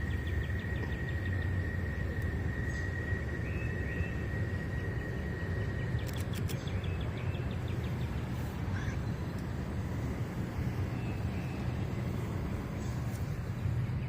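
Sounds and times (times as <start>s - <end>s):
steady high whine: 0.0s - 14.0s
steady low rumble: 0.0s - 14.0s
sharp clicks: 6.0s - 6.9s.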